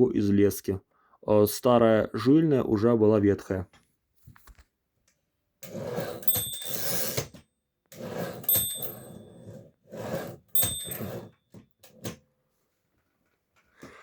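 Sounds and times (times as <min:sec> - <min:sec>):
typewriter bell ding: 0:06.2 - 0:07.3, 0:08.4 - 0:09.4, 0:10.5 - 0:11.4.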